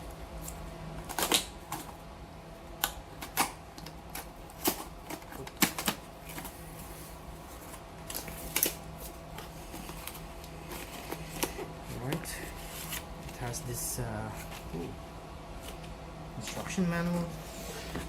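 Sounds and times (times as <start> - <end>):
packaging snaps: 1.0 - 1.9, 2.8 - 6.5
packaging being handled: 3.2 - 13.6.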